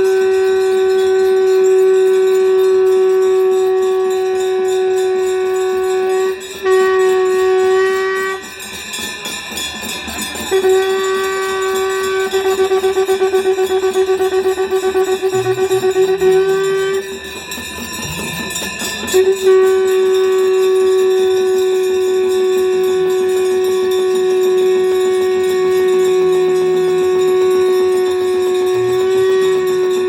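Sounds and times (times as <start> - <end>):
conch shell blowing: 0.0 - 9.1, 10.2 - 30.0.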